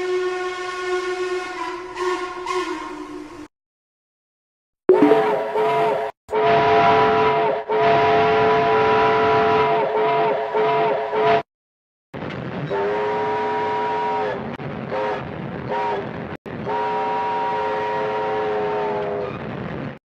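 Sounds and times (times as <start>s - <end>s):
multi-note train whistle: 0.0s - 3.5s, 5.0s - 11.4s, 12.7s - 16.0s, 16.6s - 19.3s.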